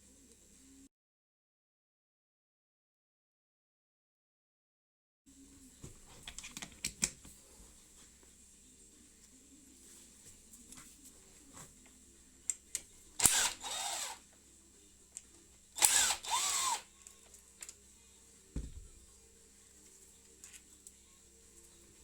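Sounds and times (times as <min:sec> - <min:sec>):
power drill motor running: 0:13.2 - 0:14.2, 0:15.8 - 0:16.9
low thump: 0:18.6 - 0:19.0.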